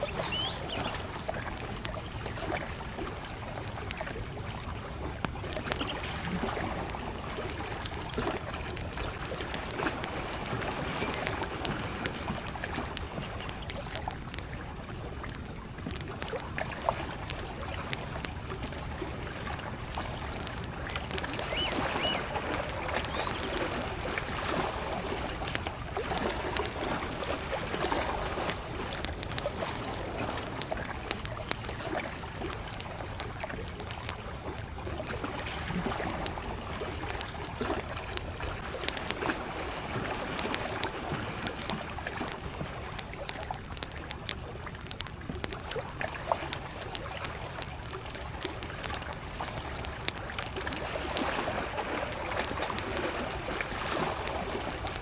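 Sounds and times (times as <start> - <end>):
faint bird calls: 0.0 - 1.1, 7.7 - 9.4, 10.7 - 12.1, 13.0 - 14.4, 17.3 - 18.1, 21.2 - 24.0, 25.3 - 26.4
campfire crackling and popping: 0.0 - 55.0
lake waves lapping: 0.0 - 55.0.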